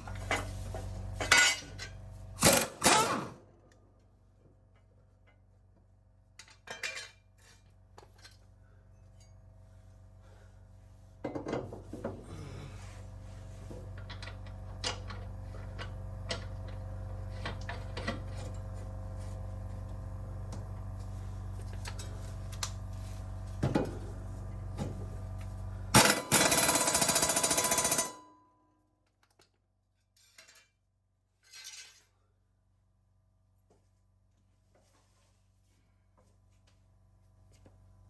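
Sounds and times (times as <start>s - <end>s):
tools clanking on metal: 1.2s - 2.0s, 6.4s - 8.4s
steady low hum: 7.3s - 26.3s
impact wrench hammering: 26.0s - 28.2s.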